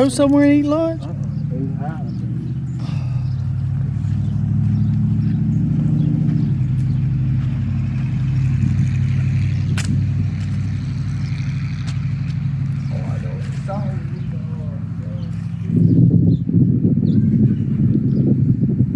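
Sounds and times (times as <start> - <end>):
vehicle engine running: 0.0 - 18.9
sharp click: 9.8 - 10.6.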